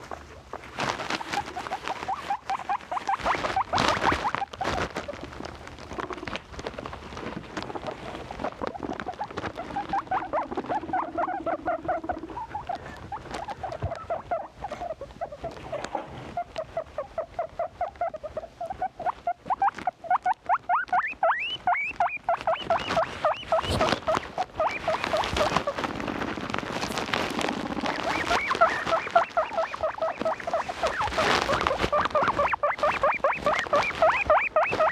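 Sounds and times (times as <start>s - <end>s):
guinea pigs squeaking: 0.0s - 34.9s
rustling and scuffling: 0.0s - 34.9s.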